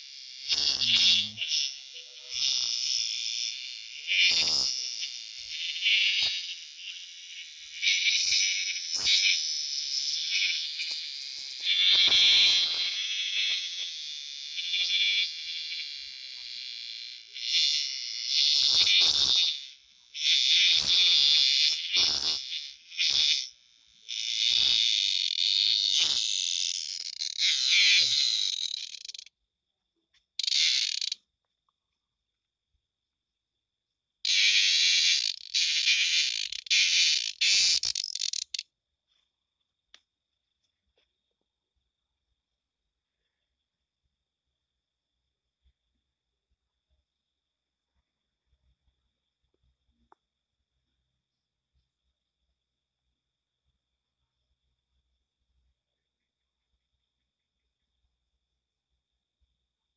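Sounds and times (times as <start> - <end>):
shrill buzzing animal call: 0.0 - 29.3, 30.4 - 31.2, 34.2 - 38.6.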